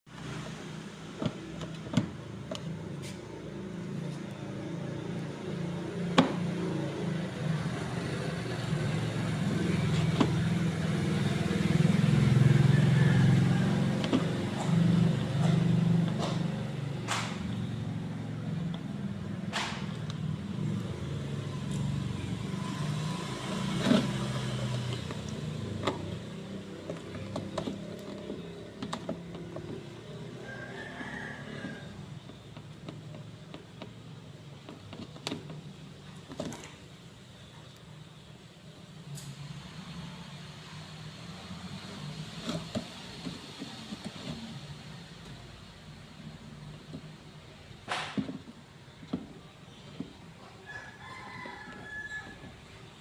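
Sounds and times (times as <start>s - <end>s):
sharp clicks and knocks: 13.9s - 17.9s, 18.6s - 20.3s, 47.8s - 50.3s.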